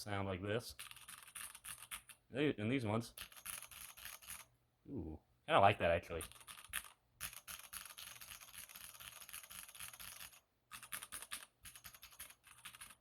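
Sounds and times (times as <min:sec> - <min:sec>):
mechanical keyboard typing: 0:00.8 - 0:02.2, 0:03.1 - 0:04.4, 0:06.2 - 0:13.0.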